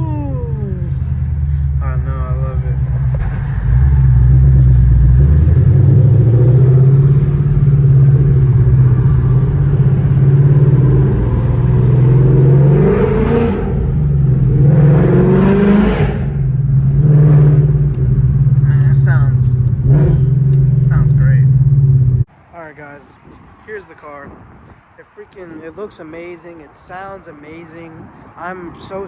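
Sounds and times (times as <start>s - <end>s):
car engine revving: 0.0s - 22.3s.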